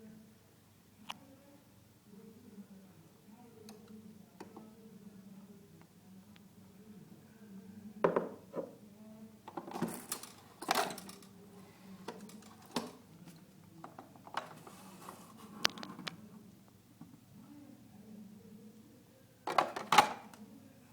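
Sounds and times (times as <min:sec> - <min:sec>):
coffee machine clicks and clatters: 0:09.5 - 0:16.1.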